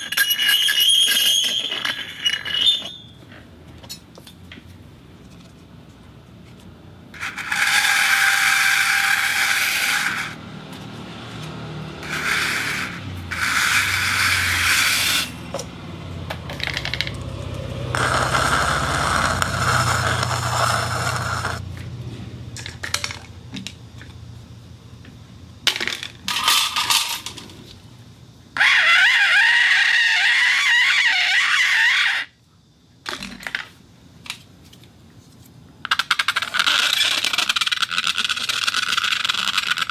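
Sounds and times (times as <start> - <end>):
objects clinking on spinning turntable: 0.0 - 3.2, 17.9 - 21.6.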